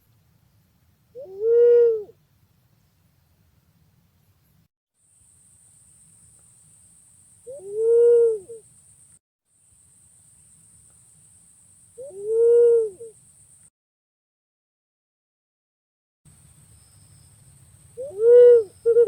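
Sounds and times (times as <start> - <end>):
green pigeon hooting whistle: 7.4 - 8.6, 12.0 - 13.2, 18.0 - 19.0.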